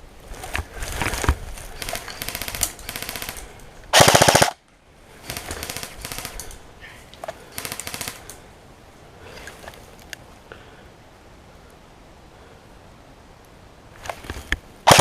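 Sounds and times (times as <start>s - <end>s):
airsoft guns firing bursts: 1.8s - 4.6s, 5.2s - 6.6s, 7.5s - 8.3s.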